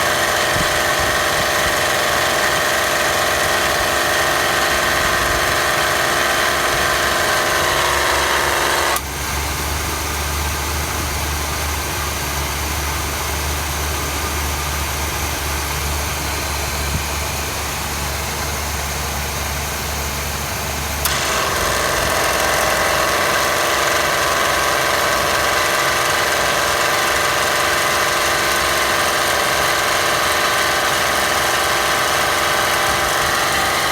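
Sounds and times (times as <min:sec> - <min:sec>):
compressor whine: 0:00.0 - 0:09.2, 0:14.0 - 0:33.9
engine hum: 0:00.0 - 0:33.9
compressor clutch click: 0:00.1 - 0:09.1, 0:21.0 - 0:33.9.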